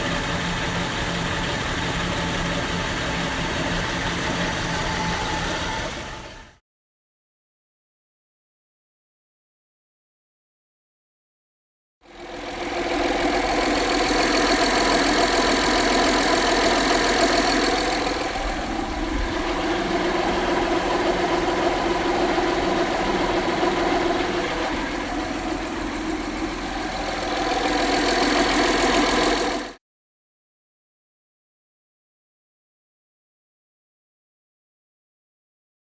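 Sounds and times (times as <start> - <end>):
car engine idling: 0.0 - 6.5, 12.1 - 29.8.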